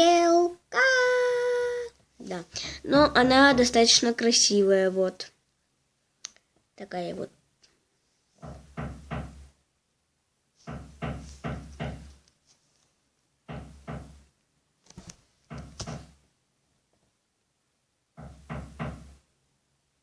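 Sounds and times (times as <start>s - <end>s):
hammering through a wall: 8.4s - 9.5s, 10.6s - 12.2s, 13.5s - 14.3s, 18.2s - 19.2s.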